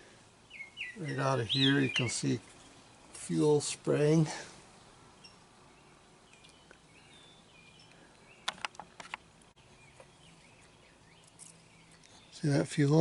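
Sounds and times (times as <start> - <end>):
faint bird chirps: 0.5 - 2.9, 4.8 - 12.6
sharp clicks: 8.4 - 9.3.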